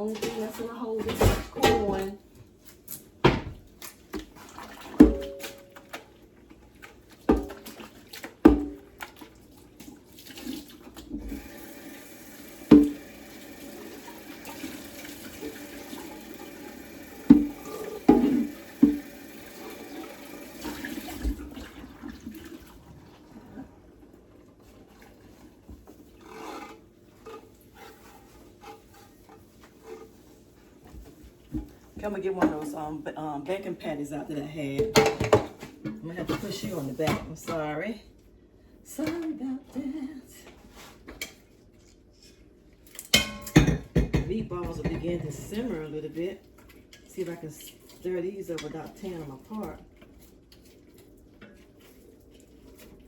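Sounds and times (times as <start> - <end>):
pots and pans clanking: 0.0 - 2.2, 3.2 - 6.0, 7.2 - 9.0, 12.6 - 13.3, 14.1 - 21.5, 34.8 - 37.6, 43.0 - 45.8
kitchen tap running: 3.2 - 26.2, 43.1 - 50.0.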